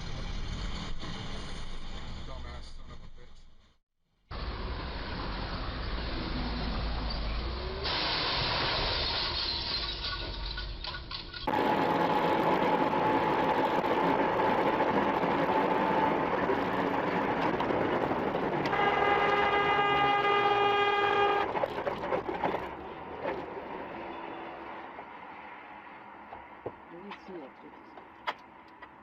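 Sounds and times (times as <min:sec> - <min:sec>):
loud rumbling noise: 0:11.5 - 0:24.0
vehicle horn blast: 0:18.7 - 0:21.6.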